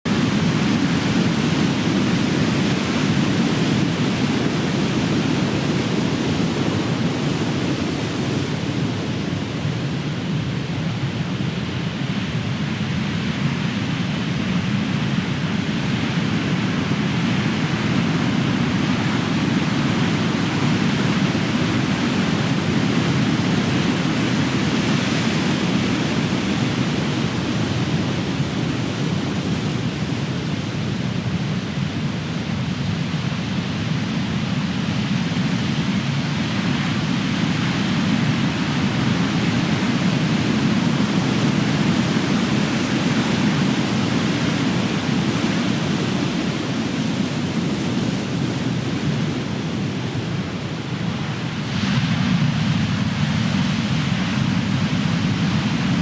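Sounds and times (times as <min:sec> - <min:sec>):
ocean waves crashing: 0:00.2 - 0:11.9, 0:36.2 - 0:56.0.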